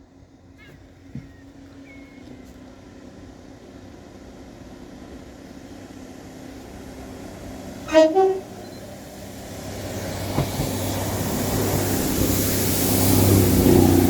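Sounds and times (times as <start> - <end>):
train rumble: 0.0 - 14.0
two-note train horn blast: 7.9 - 8.6.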